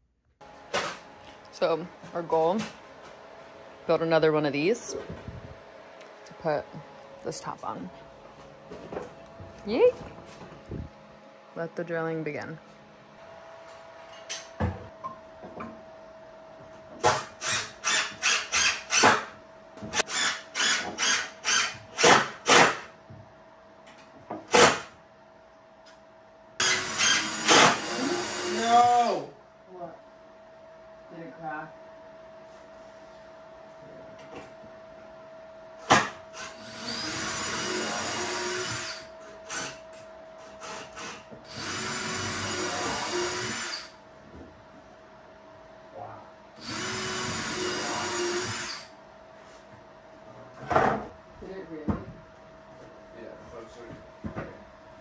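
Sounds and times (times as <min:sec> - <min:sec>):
power drill driving screws: 0:17.0 - 0:19.3, 0:19.9 - 0:22.8, 0:26.6 - 0:29.2, 0:35.9 - 0:39.8, 0:40.5 - 0:44.0, 0:46.6 - 0:48.9.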